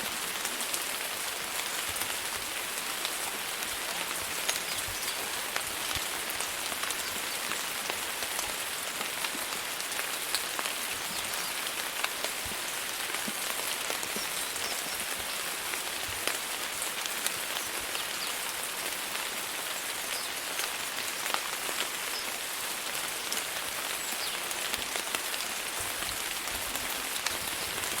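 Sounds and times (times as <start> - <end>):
steady rain hiss: 0.0 - 28.0
raindrop ticks: 3.0 - 15.3.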